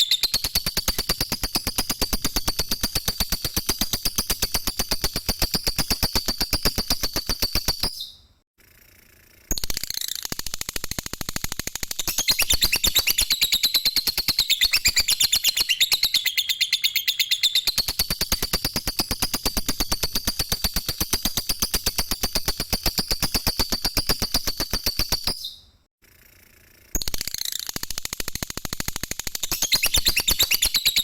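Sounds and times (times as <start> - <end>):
lovebird rattling trill: 0.0 - 8.0, 11.8 - 25.5, 29.3 - 31.0.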